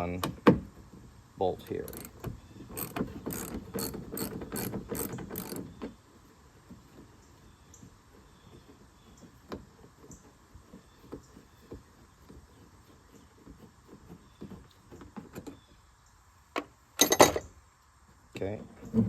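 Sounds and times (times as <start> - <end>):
metal parts clicking and tapping: 17.0 - 17.5.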